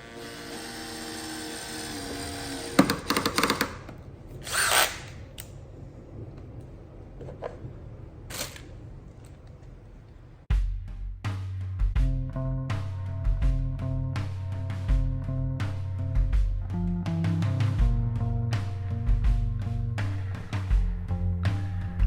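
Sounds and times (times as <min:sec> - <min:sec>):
drill driving screw into wood: 0:00.0 - 0:05.2
drill clutch clicking: 0:00.0 - 0:05.5.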